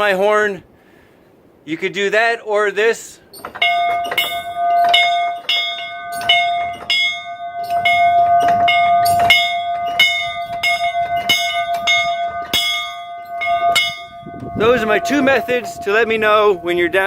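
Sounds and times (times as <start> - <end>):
metal bell ringing: 3.6 - 17.0.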